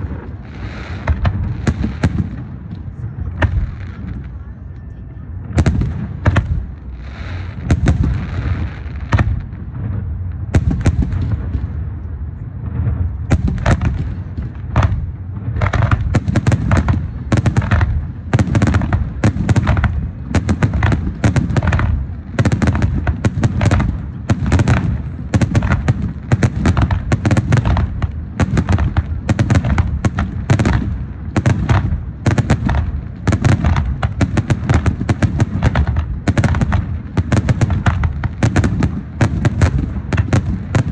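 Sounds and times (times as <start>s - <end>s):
fireworks hiss: 0.0s - 2.4s, 5.6s - 10.0s
low rumble: 0.0s - 16.2s
fireworks bangs: 0.0s - 40.9s.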